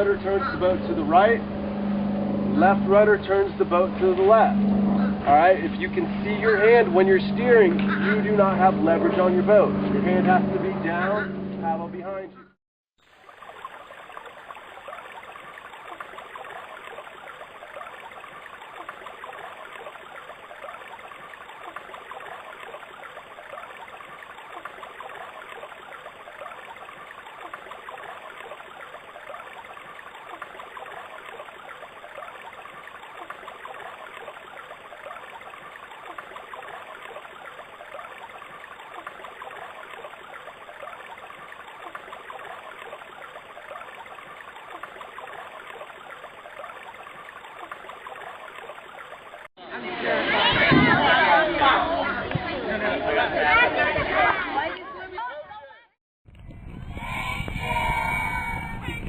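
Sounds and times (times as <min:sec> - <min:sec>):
water trickling: 0:13.0 - 0:49.5.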